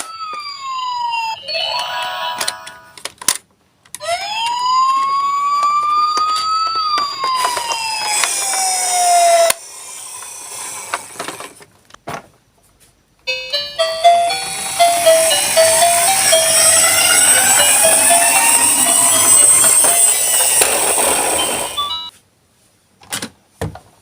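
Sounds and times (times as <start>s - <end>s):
siren wail: 0.0s - 2.9s, 4.0s - 9.5s, 14.2s - 22.1s
short tune of stepped notes: 13.3s - 22.1s.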